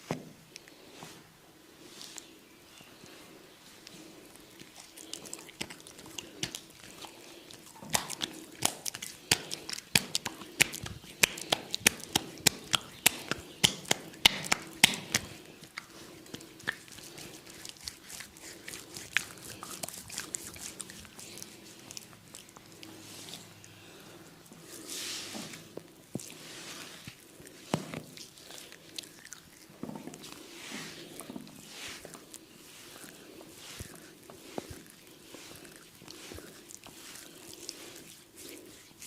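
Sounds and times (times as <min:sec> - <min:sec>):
hands rubbing skin: 0:03.1 - 0:39.0
wet slaps on oiled skin: 0:07.9 - 0:17.1.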